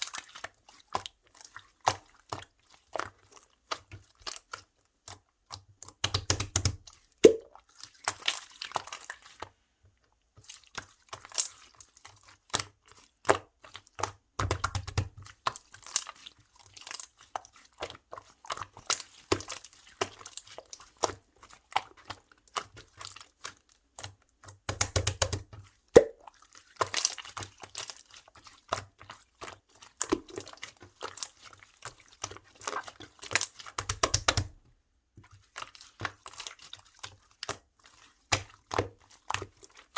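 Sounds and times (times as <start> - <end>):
slime squishing: 5.9 - 9.4, 10.4 - 34.6, 35.2 - 39.9
slime sticky clicks and pops: 6.0 - 7.5, 24.7 - 25.4, 33.8 - 34.6.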